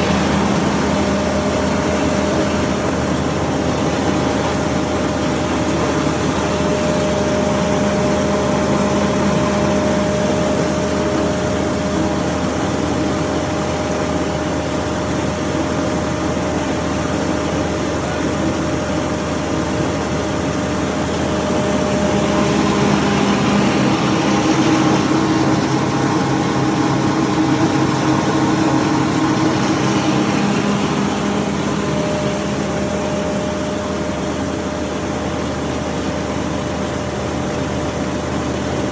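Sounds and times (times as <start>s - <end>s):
wood chipper engine running: 0.0s - 38.9s.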